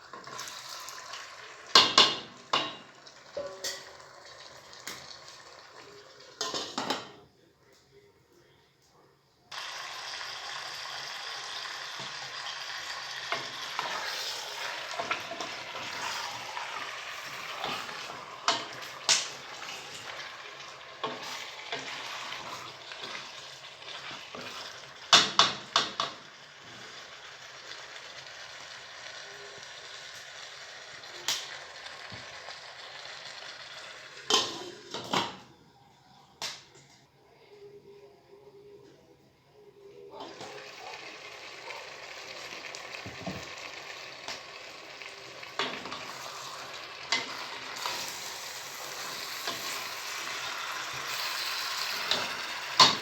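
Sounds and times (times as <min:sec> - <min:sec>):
food sizzling in a pan: 0:00.0 - 0:07.3, 0:09.5 - 0:35.4, 0:40.1 - 0:53.0
utensil stirring: 0:13.2 - 0:24.6.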